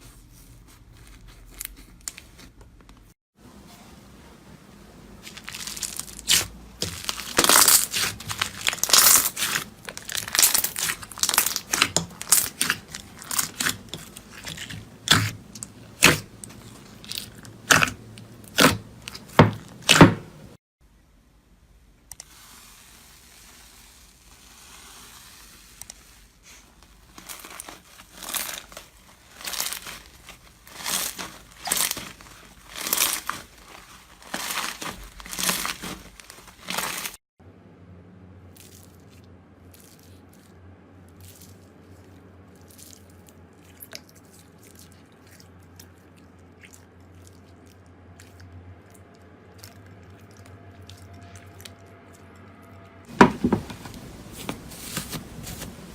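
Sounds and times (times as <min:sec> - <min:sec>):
slime crackling and popping: 0:05.2 - 0:20.2, 0:27.1 - 0:37.2
slime strokes: 0:05.2 - 0:20.6, 0:22.2 - 0:37.2, 0:53.1 - 0:55.9.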